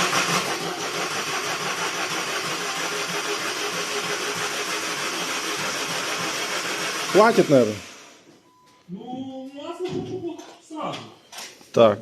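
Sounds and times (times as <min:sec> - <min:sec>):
starter motor cranking engine: 0:00.0 - 0:08.3.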